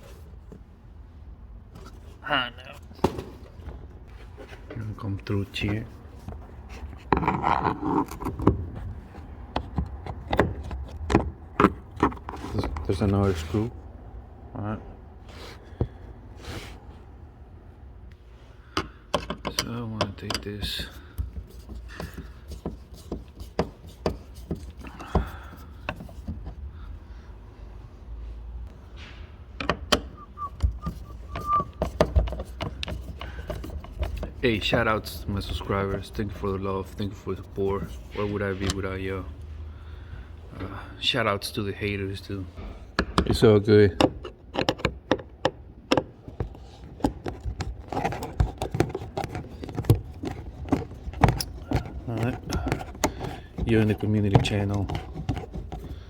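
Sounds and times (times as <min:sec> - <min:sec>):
tools clicking on plastic and metal: 0:18.8 - 0:26.6, 0:43.0 - 0:56.0.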